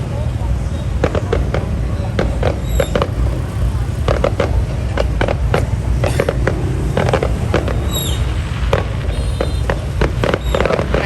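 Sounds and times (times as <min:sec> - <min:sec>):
fireworks bangs and pops: 0:00.6 - 0:11.0
low rumble: 0:01.0 - 0:11.0
falling firework whistle: 0:05.8 - 0:11.0.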